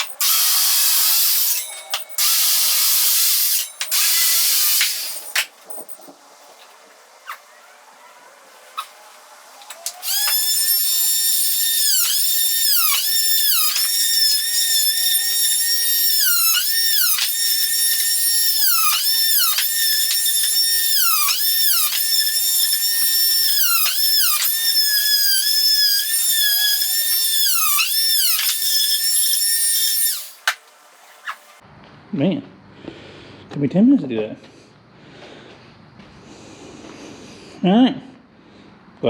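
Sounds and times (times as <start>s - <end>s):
electric saw cutting wood: 0.0s - 5.4s, 9.7s - 30.6s.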